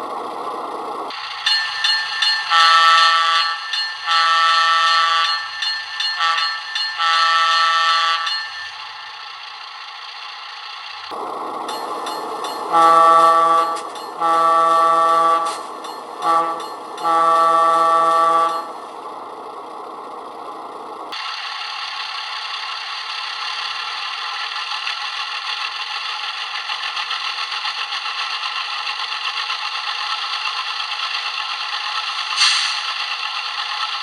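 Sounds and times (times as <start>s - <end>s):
locomotive horn: 2.5s - 5.5s, 6.2s - 8.4s, 12.7s - 18.9s.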